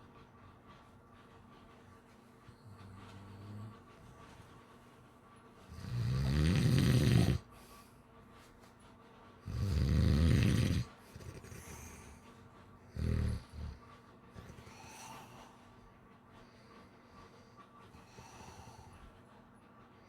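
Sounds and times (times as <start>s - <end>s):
person snoring: 5.9s - 7.4s.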